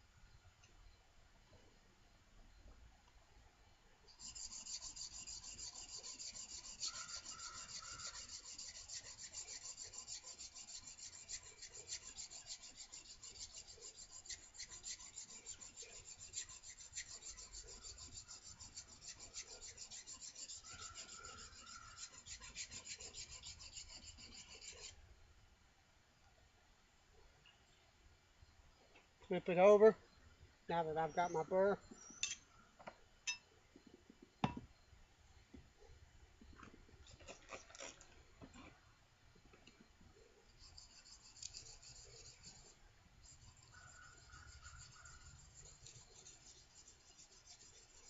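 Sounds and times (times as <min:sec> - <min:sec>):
blade scraping on sharpening plate: 0:04.2 - 0:25.0, 0:40.6 - 0:48.0.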